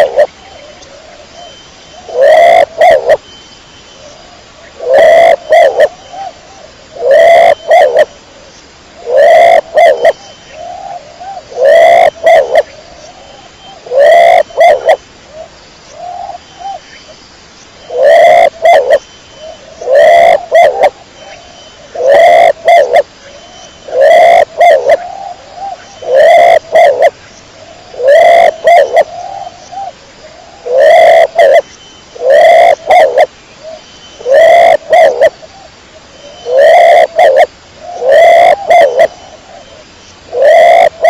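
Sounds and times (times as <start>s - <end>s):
pigeon cooing: 0.0s - 0.3s, 2.0s - 3.2s, 4.8s - 6.0s, 7.0s - 8.1s, 9.0s - 12.7s, 13.8s - 15.0s, 17.9s - 19.0s, 19.8s - 21.0s, 21.9s - 23.1s, 23.8s - 27.2s, 27.9s - 31.6s, 32.2s - 33.3s, 34.2s - 35.3s, 36.4s - 39.6s, 40.3s - 41.0s.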